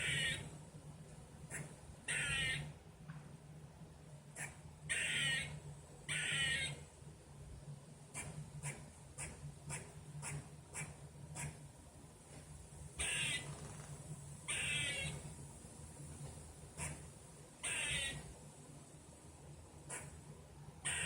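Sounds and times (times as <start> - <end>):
squirrel raspy call: 0.0 - 0.6, 1.5 - 2.8, 4.3 - 6.9, 8.1 - 11.6, 13.0 - 13.8, 14.4 - 15.3, 16.8 - 18.4, 19.9 - 20.2, 20.8 - 21.0.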